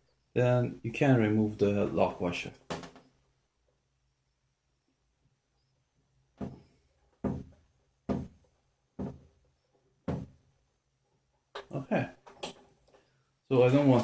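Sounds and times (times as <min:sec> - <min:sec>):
knocks of hard objects: 0:06.4 - 0:09.4, 0:10.0 - 0:10.4.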